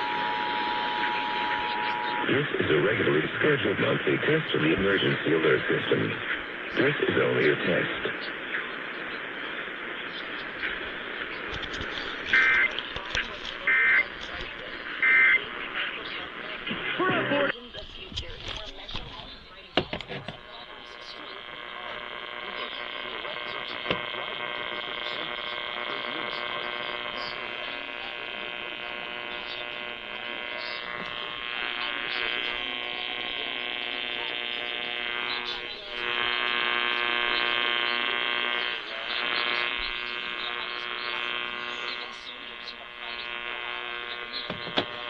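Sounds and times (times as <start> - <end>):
electrical buzz: 0.0 - 6.1, 20.3 - 45.0
radio static hiss: 0.0 - 45.0.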